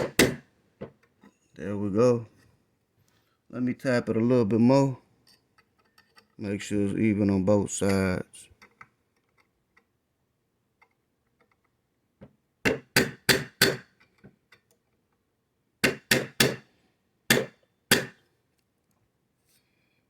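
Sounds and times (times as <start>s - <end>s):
hammer tapping metal: 12.7s - 13.9s, 15.8s - 16.6s, 17.3s - 18.2s.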